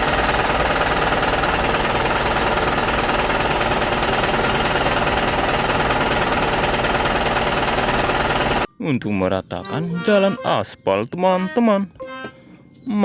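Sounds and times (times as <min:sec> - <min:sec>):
fast mechanical rattle: 0:00.0 - 0:08.7.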